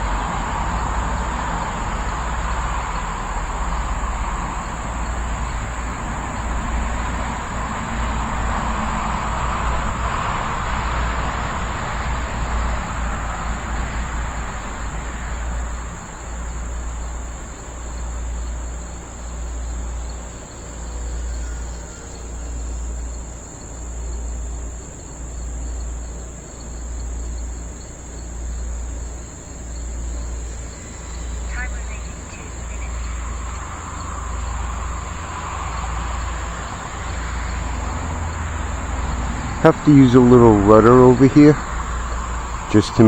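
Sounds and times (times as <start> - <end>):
wind rumbling on microphone: 0.0 - 18.0, 30.1 - 43.0
crickets chirring: 0.0 - 43.0.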